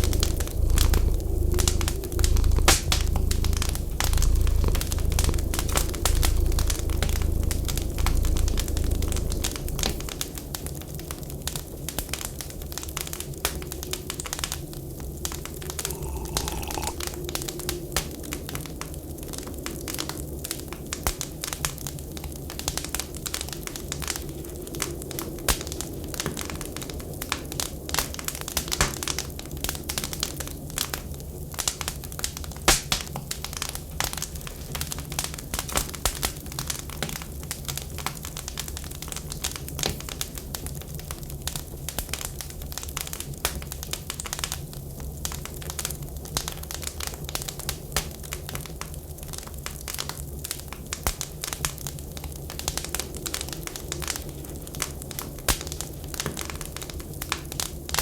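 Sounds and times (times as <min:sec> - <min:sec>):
steady low rumble: 0:00.0 - 0:10.6.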